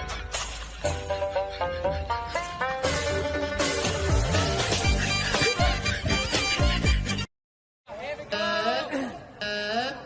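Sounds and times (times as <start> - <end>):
music: 0.0 - 7.3.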